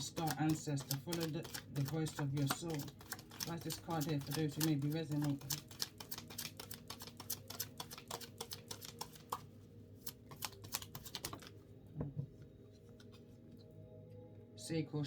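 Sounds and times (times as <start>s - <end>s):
cards being shuffled: 0.0s - 11.6s.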